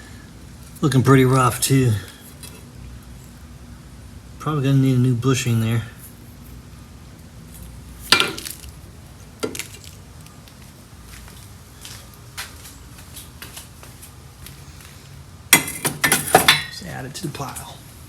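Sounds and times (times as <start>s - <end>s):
low steady hum: 0.0s - 18.0s
metal car parts clattering: 8.1s - 8.7s, 15.6s - 16.8s.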